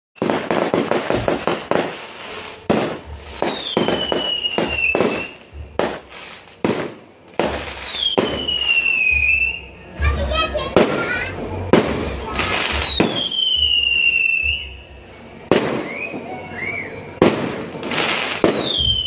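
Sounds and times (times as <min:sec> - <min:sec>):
firework whistles falling in pitch: 0:00.2 - 0:06.1, 0:07.4 - 0:09.8, 0:12.4 - 0:14.9, 0:15.5 - 0:19.0
fireworks banging: 0:00.2 - 0:19.0.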